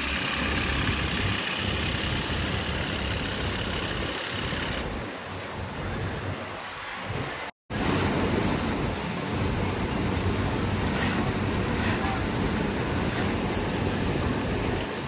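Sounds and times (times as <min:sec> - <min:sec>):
sewing machines humming and clattering: 0:00.0 - 0:04.9.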